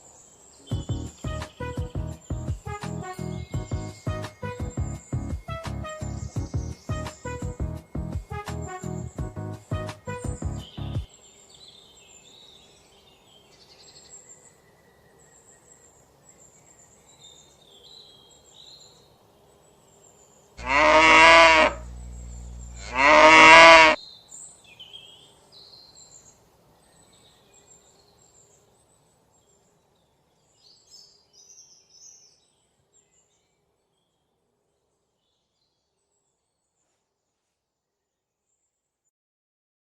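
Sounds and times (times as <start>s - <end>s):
cow mooing: 20.6s - 21.9s, 22.7s - 24.0s.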